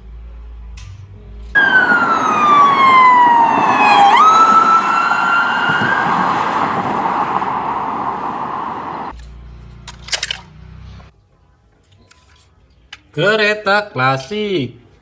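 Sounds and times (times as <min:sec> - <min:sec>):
steady rushing noise: 0:01.5 - 0:09.1
police siren wailing: 0:01.6 - 0:09.1.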